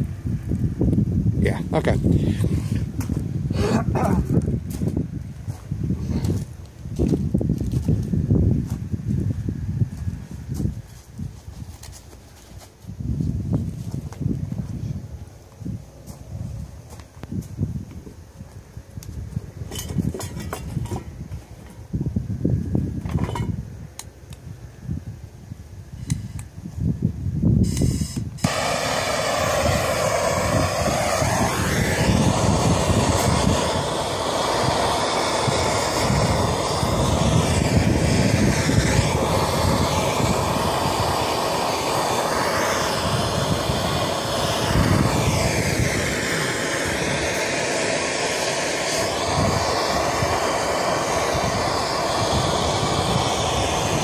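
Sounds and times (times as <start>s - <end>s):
gas torch rushing: 0.0s - 5.1s, 27.6s - 54.0s.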